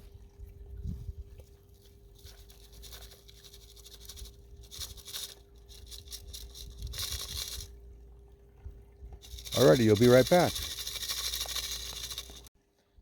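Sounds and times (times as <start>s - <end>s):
faint steady hum: 0.0s - 13.0s
dirt and gravel scraping: 9.2s - 12.5s.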